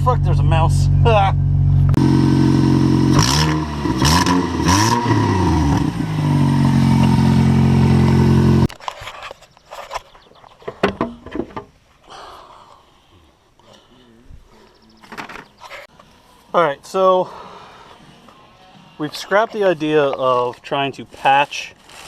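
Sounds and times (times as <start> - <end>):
car engine revving: 0.7 - 8.7.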